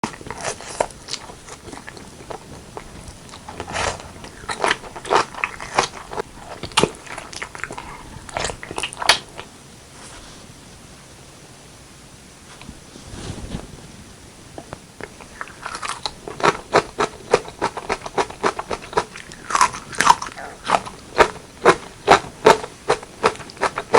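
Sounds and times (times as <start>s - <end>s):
chewing with crisp crunches: 0.0s - 9.6s, 15.0s - 23.9s.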